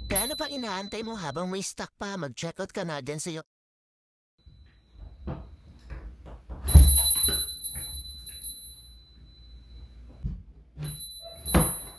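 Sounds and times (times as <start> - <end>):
metal chime ringing: 0.0 - 1.4, 10.8 - 11.9.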